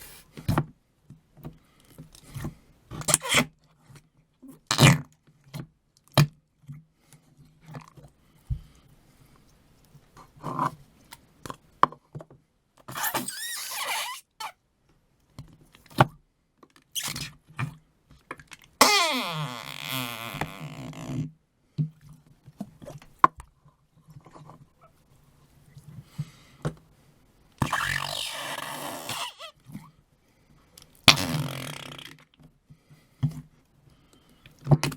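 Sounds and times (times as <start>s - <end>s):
noise putty squelching: 27.6s - 29.5s.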